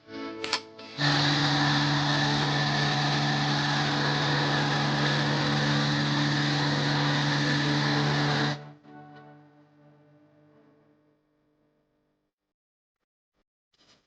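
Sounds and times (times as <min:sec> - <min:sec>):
machine humming and hissing: 0:00.9 - 0:08.7.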